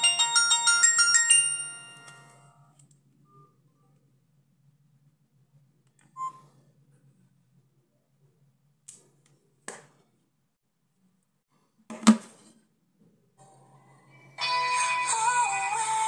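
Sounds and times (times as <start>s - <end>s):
mobile phone ringtone: 0.0s - 2.6s.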